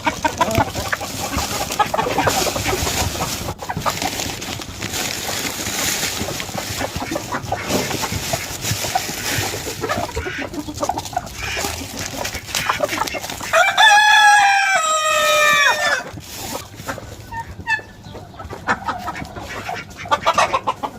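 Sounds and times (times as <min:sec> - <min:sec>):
chickens clucking: 0:00.0 - 0:20.9
rooster crowing: 0:13.4 - 0:16.1.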